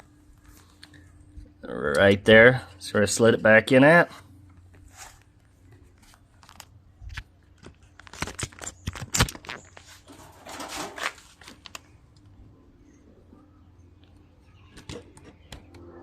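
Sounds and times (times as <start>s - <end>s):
scraping rustle: 4.8s - 5.3s, 9.4s - 11.6s.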